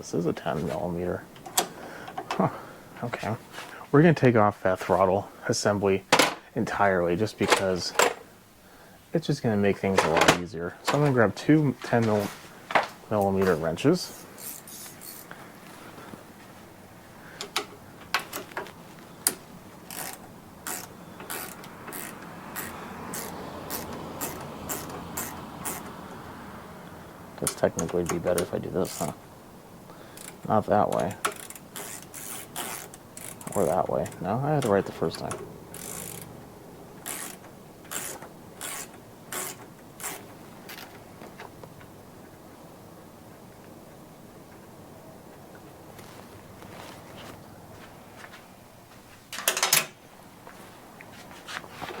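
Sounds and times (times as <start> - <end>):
wrench ratcheting: 14.1 - 15.3, 19.9 - 25.9, 31.2 - 33.7, 35.7 - 36.3, 37.0 - 40.2.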